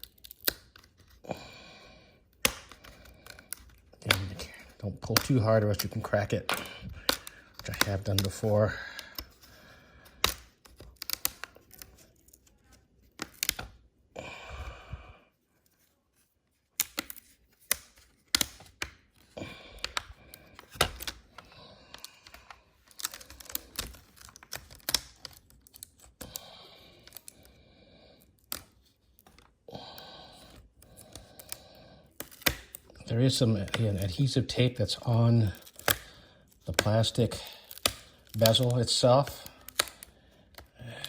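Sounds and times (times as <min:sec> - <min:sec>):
plastic clips clicking and snapping: 0:00.0 - 0:01.2, 0:02.3 - 0:13.8, 0:16.8 - 0:27.5, 0:30.4 - 0:40.8
plastic scraping: 0:02.3 - 0:13.8, 0:30.4 - 0:41.0
adhesive tape peeling: 0:35.0 - 0:40.1.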